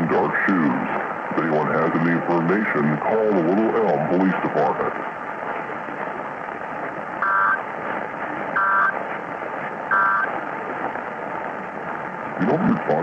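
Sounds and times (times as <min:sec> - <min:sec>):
radio static: 0:00.0 - 0:13.0
digital data tone bursts: 0:07.2 - 0:07.6, 0:08.6 - 0:09.0, 0:09.9 - 0:10.3.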